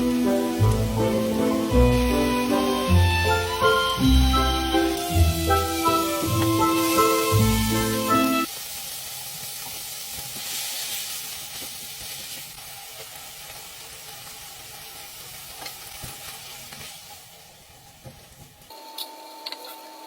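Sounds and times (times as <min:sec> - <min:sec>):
background music with mallet notes: 0:00.0 - 0:08.5
food sizzling in a frying pan: 0:00.0 - 0:18.8.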